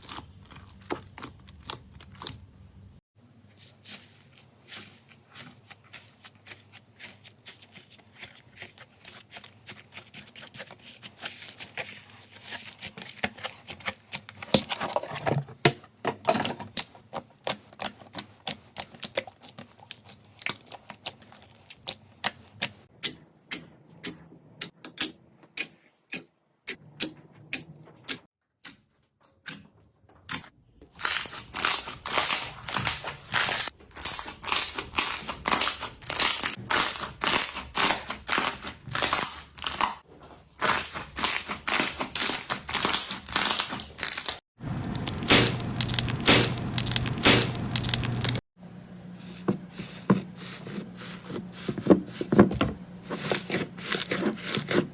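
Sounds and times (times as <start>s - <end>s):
slime clicking and crackling: 16.8s - 22.8s, 31.0s - 39.9s, 40.7s - 48.4s
slime popping: 44.8s - 48.4s.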